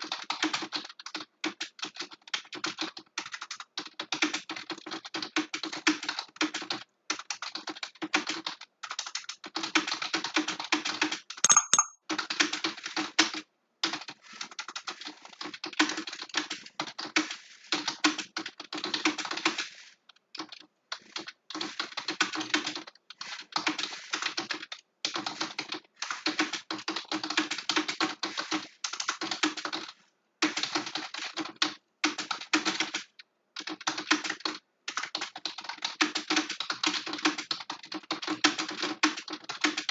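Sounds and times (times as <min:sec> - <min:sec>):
keyboard typing clicks: 0:11.5 - 0:12.0
short tone: 0:11.5 - 0:12.0.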